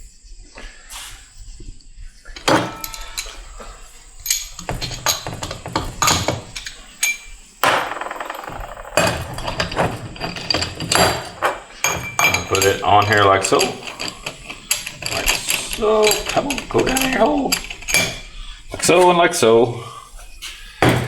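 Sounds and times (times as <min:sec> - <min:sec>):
metal parts clinking and knocking: 0:02.4 - 0:19.1, 0:20.8 - 0:21.0.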